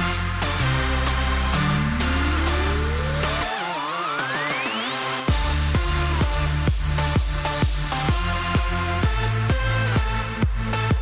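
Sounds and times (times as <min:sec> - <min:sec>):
rising synth sweep: 0:00.0 - 0:09.0
electronic dance music: 0:00.0 - 0:11.0.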